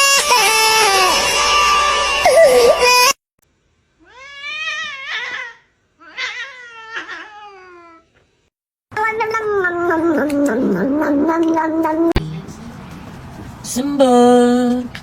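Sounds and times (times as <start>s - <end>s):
cat meowing: 4.0s - 8.1s, 9.0s - 12.2s.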